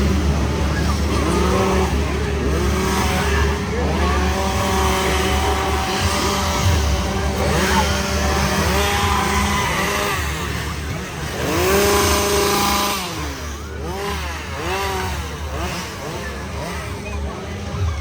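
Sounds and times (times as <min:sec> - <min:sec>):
chainsaw engines revving: 0:00.0 - 0:18.0.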